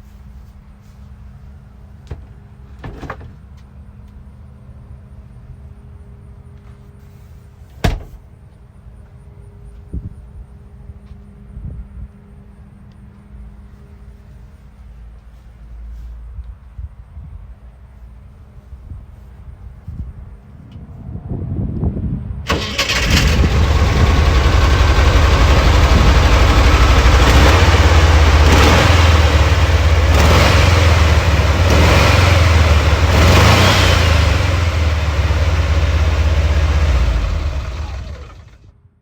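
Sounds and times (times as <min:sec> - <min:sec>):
engine starting and throbbing: 0:22.5 - 0:38.7.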